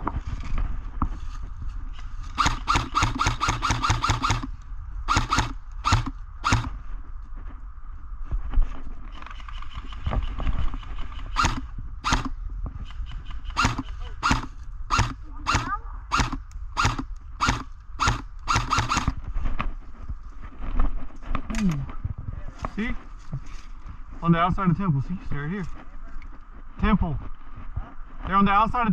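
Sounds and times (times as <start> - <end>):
airsoft guns firing: 2.4 - 4.5, 5.1 - 6.8, 11.4 - 12.4, 13.5 - 19.1.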